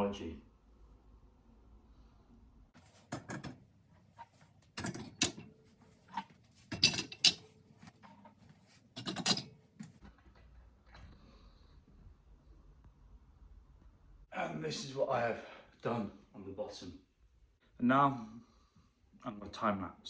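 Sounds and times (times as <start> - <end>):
dishes clattering in dishwasher: 2.9 - 3.6, 4.2 - 10.0.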